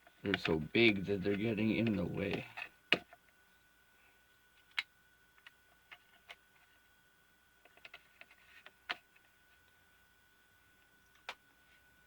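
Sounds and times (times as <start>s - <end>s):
small plastic parts clicking: 7.6s - 9.2s.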